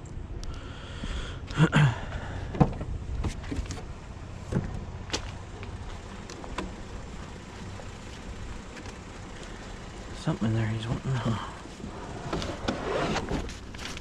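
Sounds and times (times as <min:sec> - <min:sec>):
low steady background noise: 0:00.0 - 0:14.0
junk knocking and clunking: 0:02.1 - 0:09.6.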